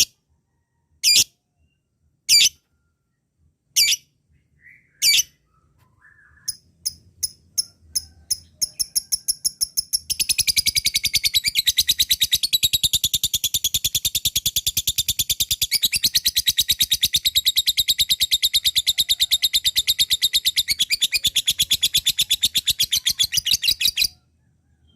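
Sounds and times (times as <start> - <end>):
lovebird chattering trill: 6.0 - 24.2.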